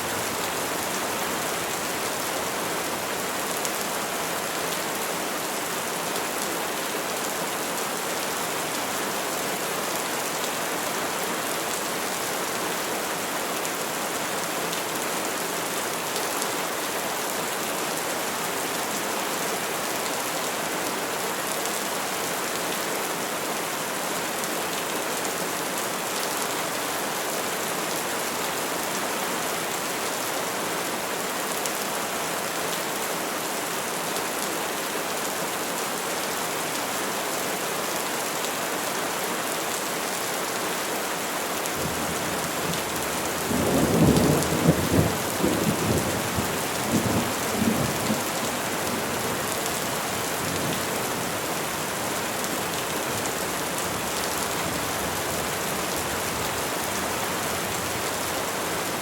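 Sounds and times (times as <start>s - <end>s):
rain falling on leaves: 0.0s - 59.0s.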